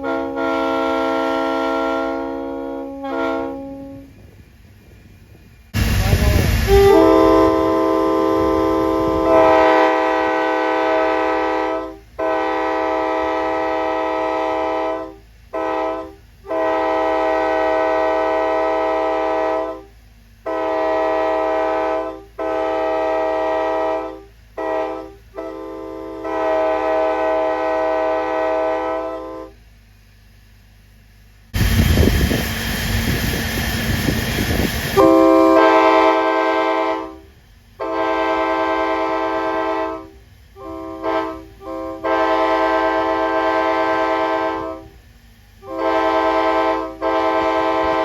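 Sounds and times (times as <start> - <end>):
locomotive air horn blasts: 0.0 - 4.1, 6.3 - 29.6, 34.9 - 45.0, 45.6 - 48.0.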